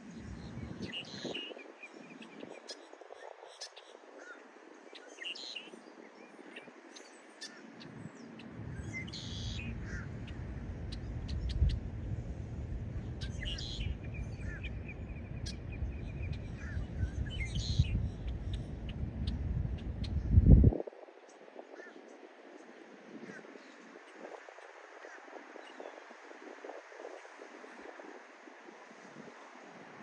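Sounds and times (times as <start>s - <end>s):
wild birds chirping: 0.2s - 12.0s, 13.0s - 20.4s, 21.2s - 26.3s.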